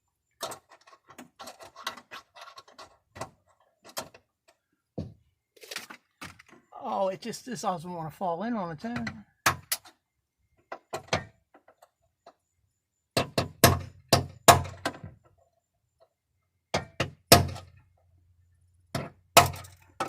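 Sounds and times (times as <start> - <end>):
sharp metal knocks: 13.2 - 15.1, 16.7 - 17.8, 18.9 - 20.0.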